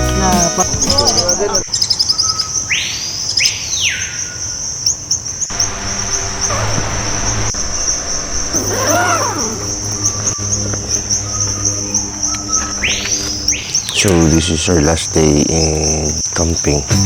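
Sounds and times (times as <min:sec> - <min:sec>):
soft background music: 0:00.0 - 0:01.6
insects shrilling: 0:04.4 - 0:17.0
whoosh effect: 0:05.5 - 0:13.4.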